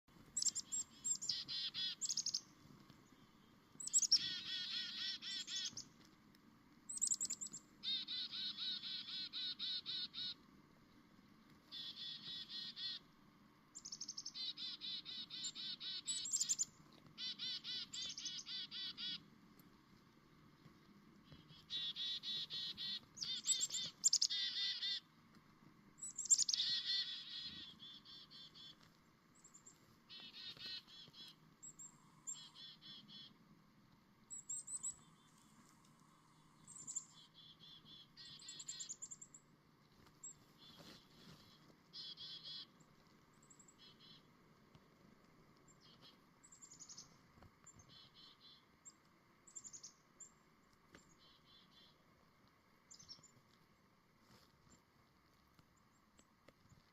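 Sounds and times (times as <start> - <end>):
faint low hum: 0.1 - 56.9
chickadees calling: 0.3 - 2.6, 3.8 - 6.0, 6.9 - 10.4, 11.7 - 13.1, 13.8 - 19.3, 21.2 - 25.1, 26.0 - 33.4, 34.3 - 39.5, 40.2 - 44.3, 45.7 - 52.1.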